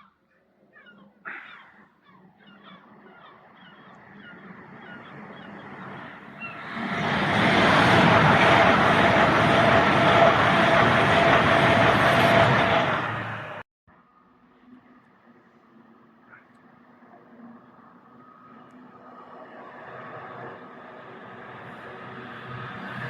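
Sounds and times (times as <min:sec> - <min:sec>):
train passing: 0:02.8 - 0:13.6, 0:17.1 - 0:23.0.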